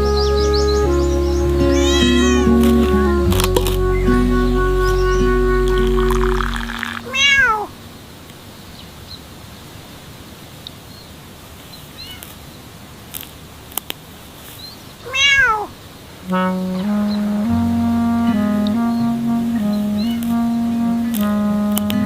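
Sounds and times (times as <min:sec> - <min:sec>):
music: 0:00.0 - 0:07.0, 0:16.3 - 0:22.0
cat meowing: 0:01.7 - 0:03.0, 0:07.0 - 0:07.7, 0:15.1 - 0:15.7.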